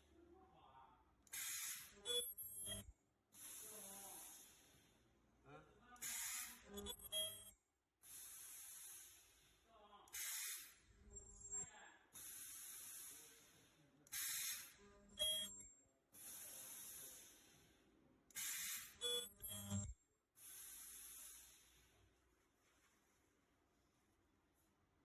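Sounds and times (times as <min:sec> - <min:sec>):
ultrasonic welding machine hiss: 0:01.4 - 0:01.9, 0:06.0 - 0:06.6, 0:12.2 - 0:13.6, 0:14.2 - 0:14.8, 0:16.2 - 0:17.6, 0:18.4 - 0:19.0, 0:20.4 - 0:21.8.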